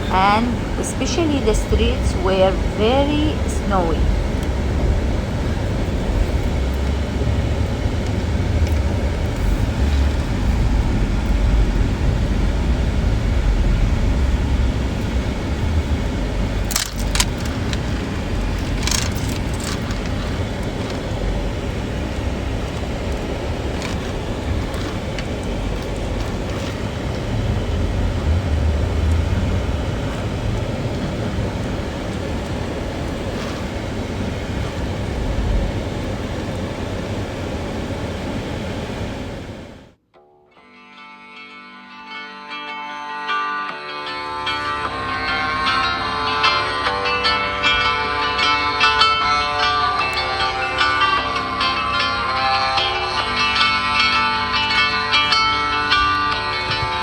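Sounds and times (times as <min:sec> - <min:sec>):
car engine and road rumble: 0:00.0 - 0:40.0, 0:44.0 - 0:57.0
short rattling clicks: 0:16.6 - 0:21.0.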